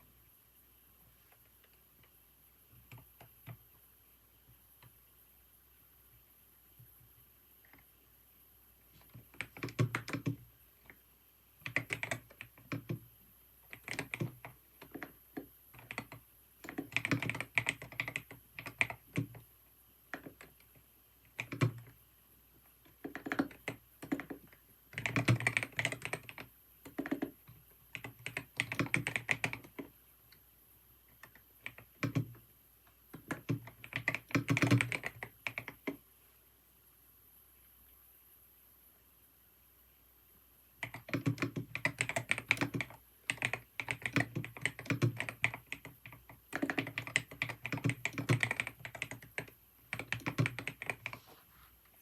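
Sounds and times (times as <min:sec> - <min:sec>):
computer keyboard typing: 0:02.7 - 0:03.6, 0:09.0 - 0:11.0, 0:11.6 - 0:19.5, 0:20.1 - 0:22.0, 0:22.8 - 0:29.9, 0:31.1 - 0:32.4, 0:33.1 - 0:36.0, 0:40.8 - 0:51.2.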